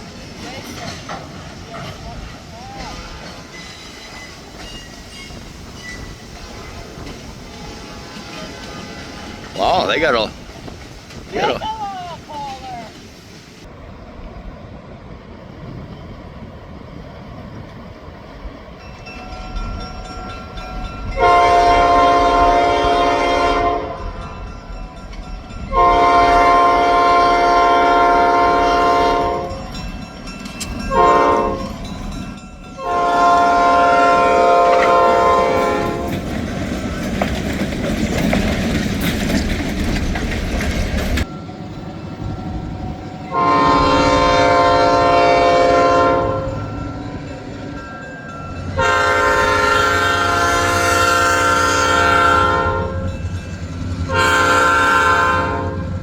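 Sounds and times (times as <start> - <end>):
locomotive engine rumbling: 0.0 - 56.0
train wheels rumbling: 0.0 - 56.0
diesel locomotive horn: 6.4 - 10.3, 21.1 - 24.3, 25.7 - 29.8, 30.9 - 31.8, 32.8 - 36.2, 43.2 - 47.2, 48.7 - 53.2, 54.0 - 56.0.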